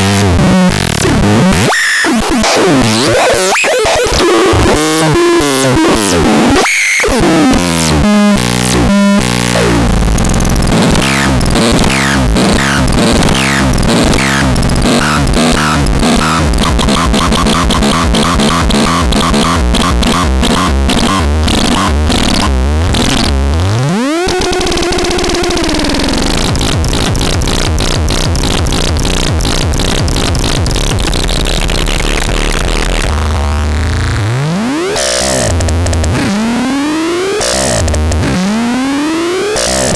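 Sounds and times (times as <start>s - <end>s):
glitchy synthesizer sounds: 0.0s - 39.9s
rising synthesizer pitch sweep: 8.4s - 39.9s.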